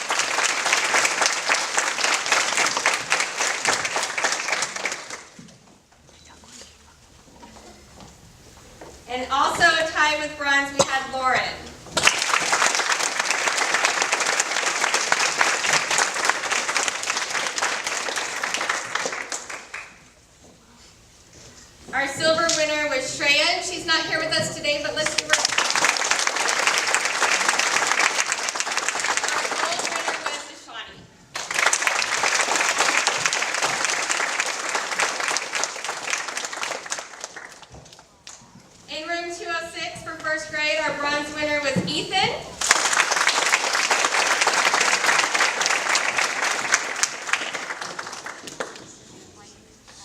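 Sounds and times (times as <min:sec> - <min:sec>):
audience applauding: 0:00.0 - 0:05.5, 0:12.0 - 0:20.1, 0:25.1 - 0:30.5, 0:31.3 - 0:38.4, 0:42.6 - 0:49.0.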